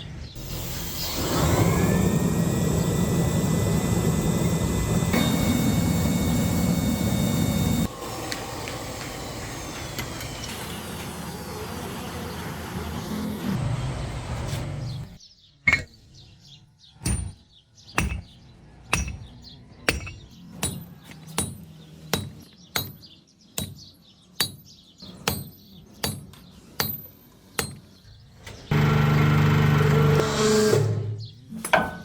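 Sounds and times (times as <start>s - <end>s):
hammer striking iron on anvil: 17.0s - 17.4s, 18.0s - 18.3s, 18.9s - 19.3s, 19.9s - 27.8s, 31.6s - 32.0s.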